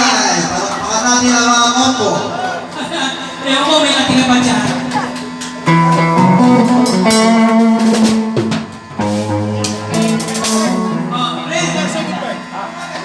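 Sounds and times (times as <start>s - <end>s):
sustained band chords: 0.0s - 13.0s
drum kit hits: 4.1s - 12.6s.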